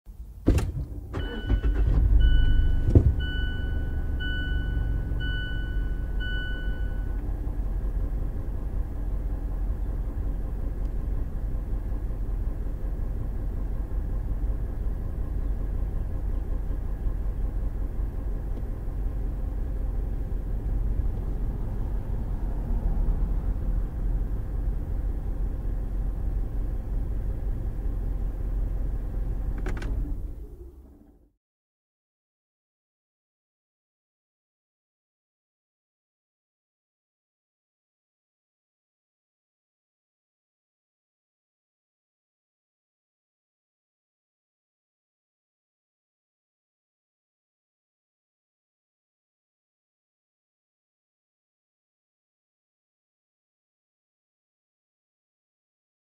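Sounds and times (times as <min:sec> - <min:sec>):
car engine starting and idling: 0:00.1 - 0:31.4
dashboard chime beeping: 0:01.2 - 0:07.1.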